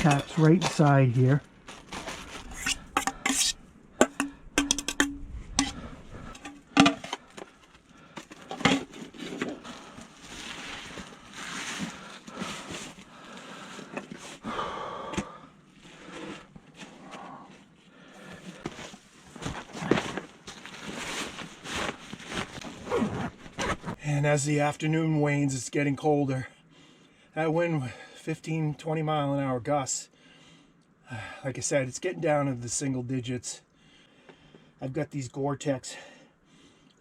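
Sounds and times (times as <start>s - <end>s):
gear rustling and scraping: 0.0s - 3.6s, 4.8s - 14.4s, 18.4s - 24.0s
cookware knocking and clinking: 4.0s - 5.8s.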